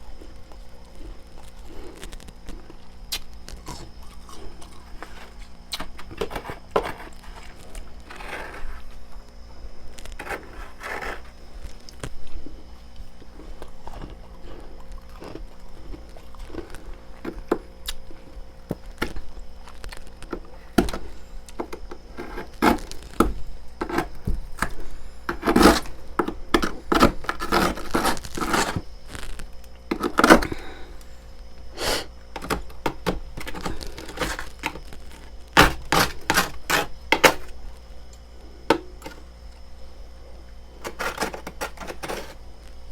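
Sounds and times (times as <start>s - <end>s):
frost being chewed: 0.1s - 20.7s.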